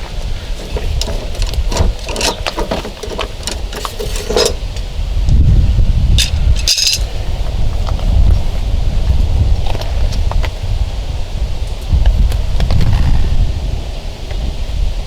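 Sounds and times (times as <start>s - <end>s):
wind rumble on microphone: 0.0s - 15.0s
metal tools clicking and knocking: 0.6s - 4.6s, 6.2s - 7.1s.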